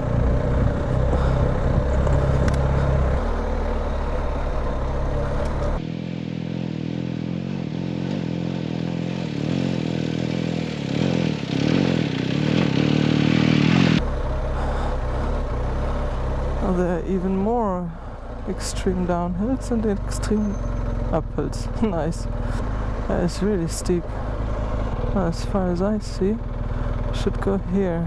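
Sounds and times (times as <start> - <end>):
clatter and scraping from terrain: 0.0 - 5.8
motorcycle engine running: 0.0 - 28.0.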